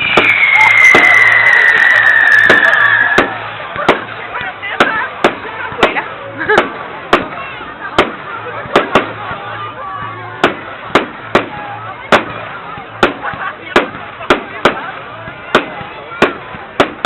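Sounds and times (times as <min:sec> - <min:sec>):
firework whistling: 0:00.0 - 0:04.2
firework bangs and cracks: 0:00.0 - 0:17.0.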